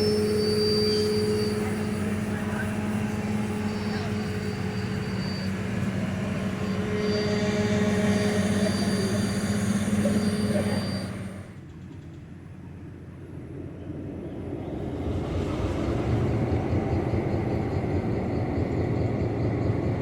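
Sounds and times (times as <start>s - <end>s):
thin high whine: 0.0s - 11.5s
locomotive engine humming: 0.0s - 20.0s.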